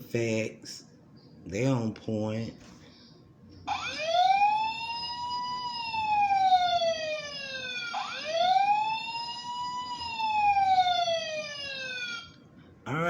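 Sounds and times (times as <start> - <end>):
toy siren wailing: 3.7 - 12.4.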